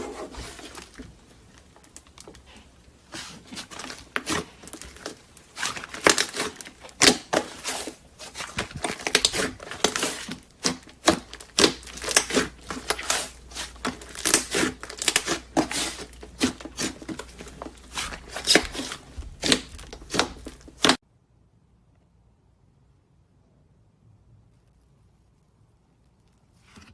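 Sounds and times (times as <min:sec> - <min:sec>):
slime crackling and popping: 0:03.2 - 0:21.0.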